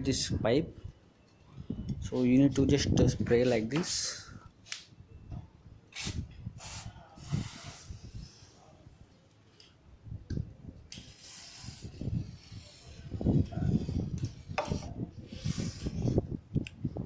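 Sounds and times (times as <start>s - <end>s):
rubbing and handling noise: 11.0s - 16.3s.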